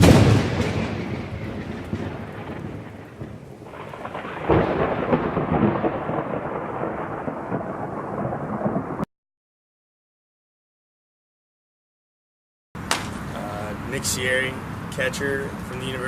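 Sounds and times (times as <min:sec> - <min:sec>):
loud thunderclap: 0:00.0 - 0:09.1
rain: 0:00.0 - 0:09.1, 0:12.8 - 0:16.0
rolling thunder: 0:00.0 - 0:09.1.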